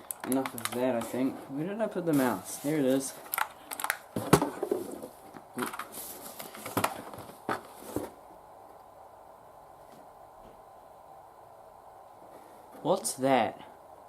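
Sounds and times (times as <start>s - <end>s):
packaging knocks and rustling: 2.2s - 8.2s.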